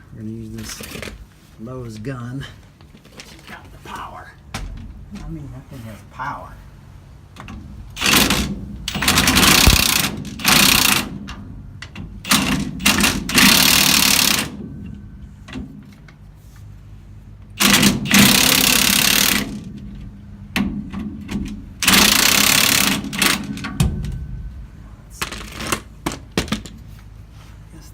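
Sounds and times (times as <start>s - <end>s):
impact wrench rattling: 7.4s - 14.7s, 17.6s - 24.3s, 25.2s - 26.9s.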